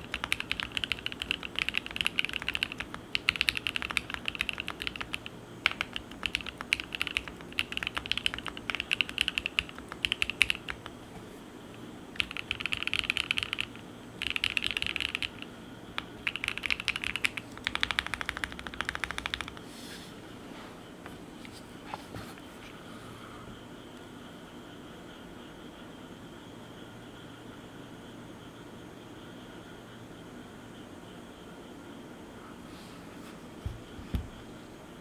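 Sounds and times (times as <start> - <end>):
mechanical keyboard typing: 0.0 - 11.0, 12.2 - 19.6.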